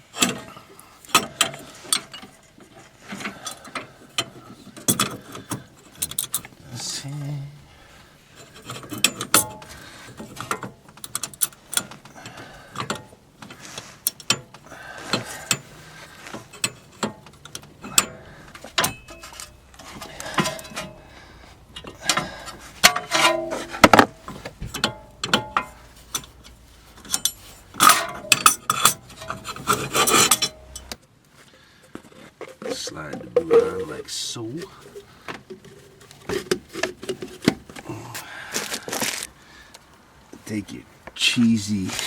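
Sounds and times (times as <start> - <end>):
clicks and taps on metal: 8.5 - 15.7, 21.8 - 31.0
rubbing or scraping on metal: 13.5 - 30.9
metallic ring: 17.8 - 21.2, 22.8 - 26.3, 27.1 - 30.9, 33.4 - 34.0.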